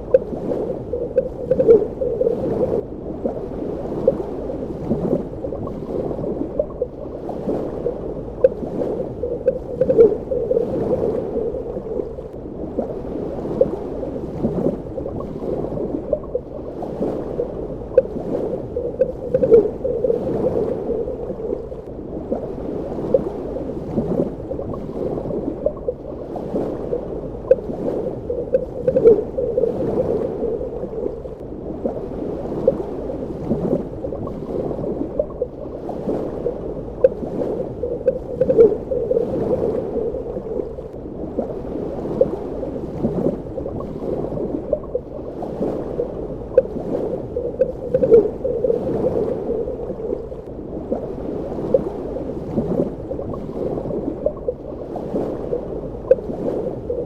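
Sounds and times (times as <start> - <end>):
bubbling pops and gurgles: 0.0 - 2.8, 8.3 - 12.2, 17.9 - 21.7, 27.4 - 31.3, 37.0 - 40.4, 46.5 - 50.2
muffled underwater rush: 0.0 - 57.0.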